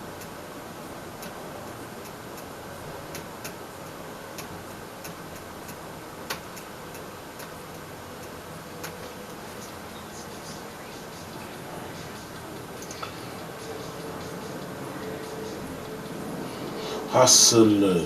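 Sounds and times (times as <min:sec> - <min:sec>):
faint regular ticking: 0:00.0 - 0:16.7
steady hiss: 0:00.0 - 0:18.0.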